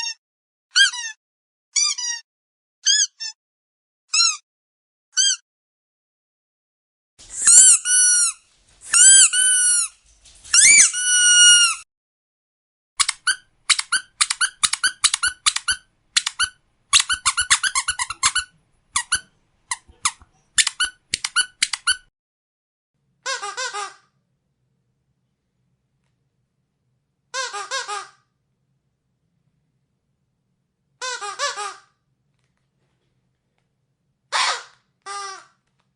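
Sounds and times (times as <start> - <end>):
squeaky dog toy squeaking: 0.0 - 2.2, 2.8 - 3.4, 4.1 - 4.4, 5.1 - 5.4, 7.4 - 9.9, 10.5 - 11.8, 13.0 - 22.1, 23.2 - 24.1, 27.3 - 28.2, 31.0 - 31.9, 34.3 - 35.6.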